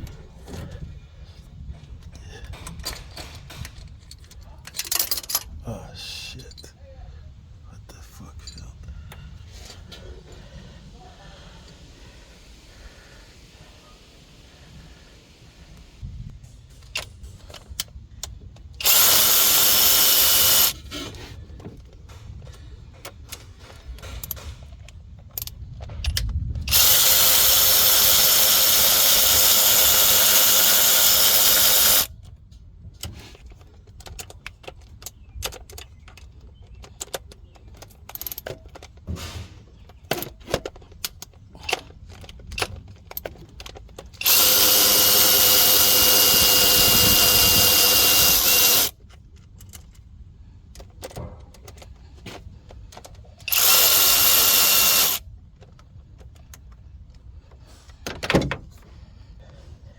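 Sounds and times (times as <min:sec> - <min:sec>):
clatter of tools and parts: 0:01.7 - 0:05.6, 0:16.4 - 0:59.5
cordless power tool running: 0:18.8 - 0:20.8, 0:26.7 - 0:32.1, 0:44.2 - 0:48.9, 0:53.5 - 0:55.2.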